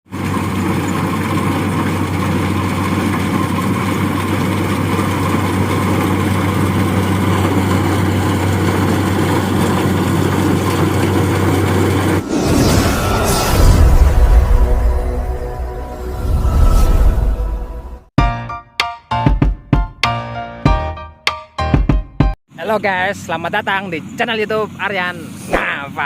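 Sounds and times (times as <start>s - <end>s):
combine harvester engine humming: 0.1s - 16.2s.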